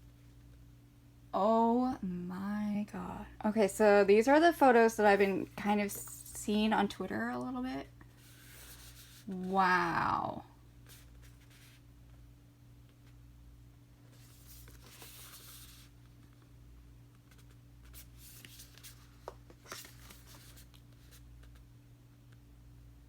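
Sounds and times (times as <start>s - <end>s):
steady low hum: 0.0s - 23.0s
paper rustling: 14.1s - 16.4s, 17.2s - 21.6s.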